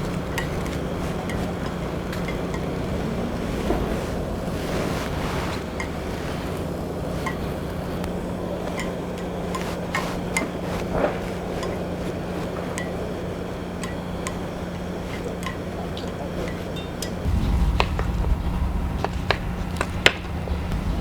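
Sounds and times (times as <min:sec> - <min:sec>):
steady hiss and hum: 0:00.0 - 0:21.0
kitchenware clicking and clinking: 0:15.2 - 0:17.3.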